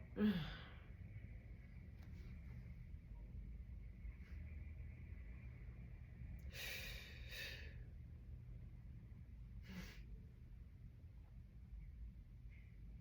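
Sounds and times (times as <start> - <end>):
faint low hum: 0.0 - 13.0
person breathing: 6.5 - 7.8.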